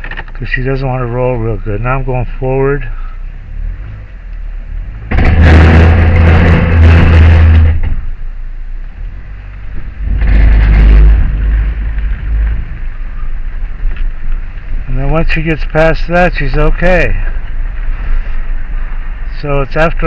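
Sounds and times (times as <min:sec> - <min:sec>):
car brakes grinding: 0:03.3 - 0:08.3, 0:09.1 - 0:14.9.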